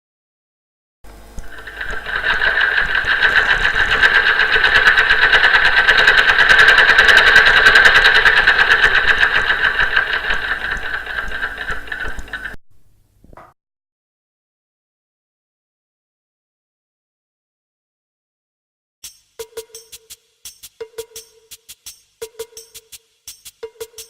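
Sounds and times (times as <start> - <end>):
sewing machine stitching fast: 1.2 - 12.6.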